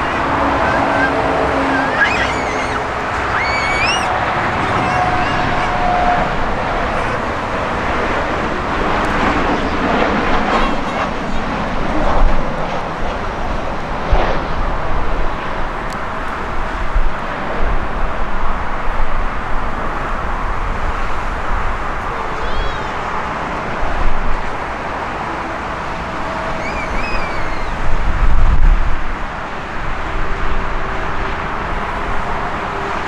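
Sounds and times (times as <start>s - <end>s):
jet engines running: 0.0s - 33.0s.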